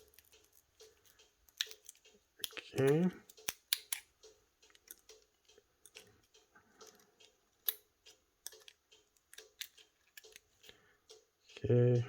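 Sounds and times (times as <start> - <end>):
hand tools clicking on phone parts: 0.0 - 10.8.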